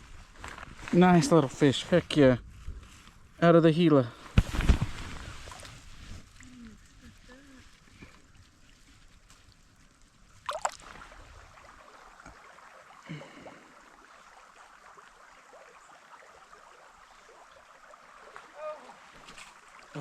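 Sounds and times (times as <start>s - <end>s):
creek water running: 3.5s - 20.0s.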